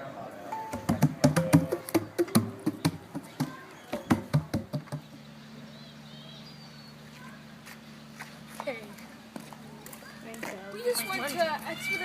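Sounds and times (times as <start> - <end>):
sharp knocks: 0.7 - 5.1.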